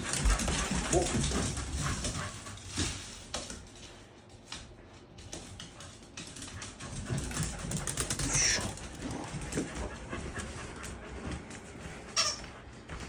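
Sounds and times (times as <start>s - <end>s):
dogs scuffling: 0.0s - 13.0s
dog whining: 8.2s - 8.8s.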